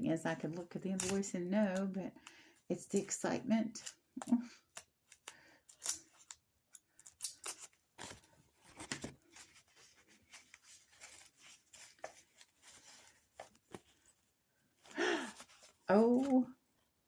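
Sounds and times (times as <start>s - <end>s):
wrapping rustling and tearing: 4.8s - 14.2s, 15.0s - 16.4s.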